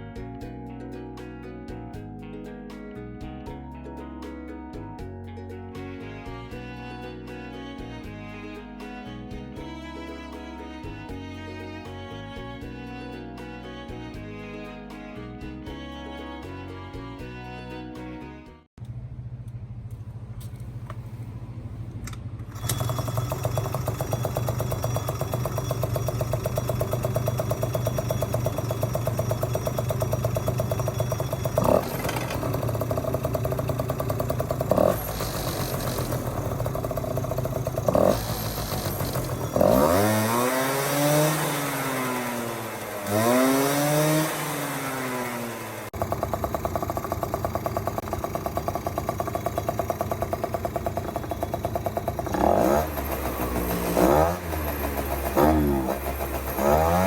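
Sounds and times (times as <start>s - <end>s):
scooter engine idling and revving: 18.8s - 57.0s.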